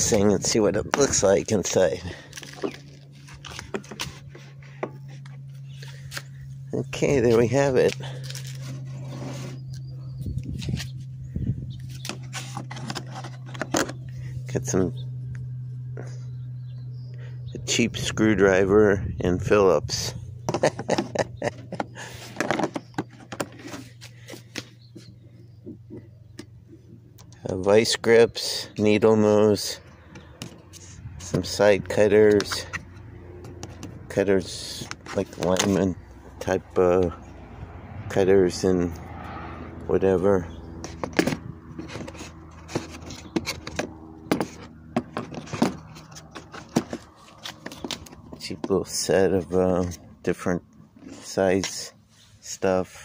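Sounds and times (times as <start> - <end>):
steady low hum: 0.0 - 53.0
tools rubbing and scraping: 2.2 - 6.4, 7.2 - 9.9, 11.8 - 14.1, 20.5 - 26.2, 30.4 - 34.0, 34.7 - 36.0, 40.8 - 48.5, 51.0 - 52.4.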